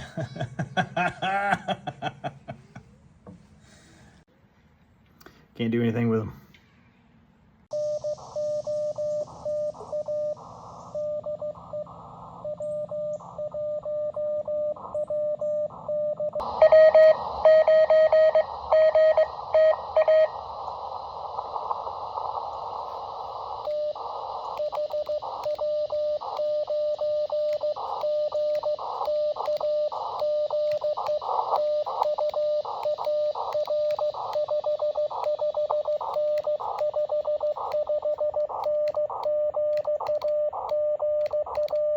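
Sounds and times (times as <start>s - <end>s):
radio receiver hiss: 7.7s - 13.6s, 14.8s - 41.9s
morse code tone: 7.7s - 20.4s, 23.7s - 41.9s.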